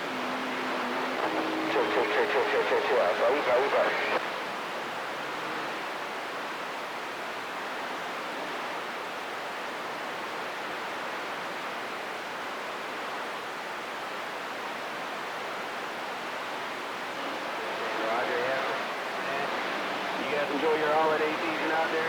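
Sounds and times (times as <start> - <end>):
radio static hiss: 0.0 - 4.3, 17.0 - 22.0.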